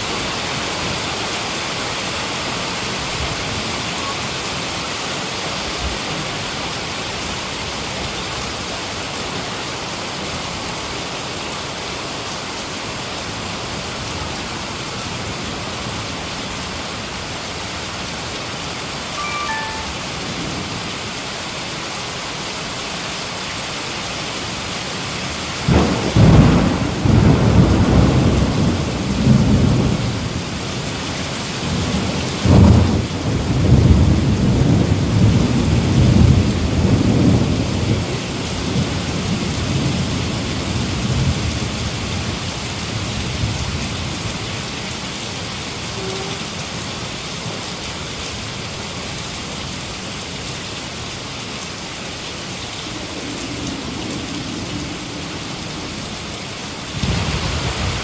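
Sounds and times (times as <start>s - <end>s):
heavy rain falling: 0.0s - 58.0s
thunder rumbling: 25.6s - 30.4s, 52.9s - 58.0s.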